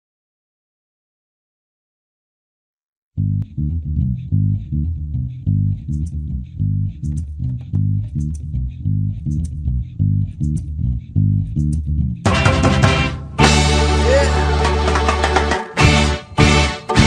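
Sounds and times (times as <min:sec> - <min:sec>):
bass guitar riff: 0:03.2 - 0:17.0
faint regular ticks: 0:05.9 - 0:12.1
rock band playing loudly: 0:12.3 - 0:17.0.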